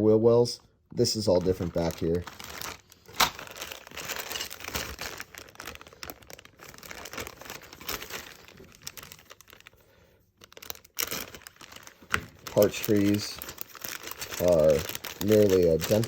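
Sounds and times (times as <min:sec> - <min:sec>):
plastic bag crinkling: 0:01.0 - 0:16.0.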